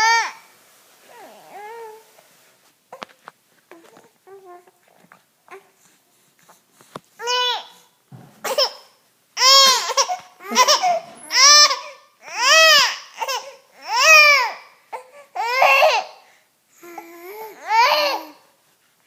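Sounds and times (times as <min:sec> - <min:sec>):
baby cooing and squealing: 0:09.4 - 0:16.1, 0:16.8 - 0:18.4.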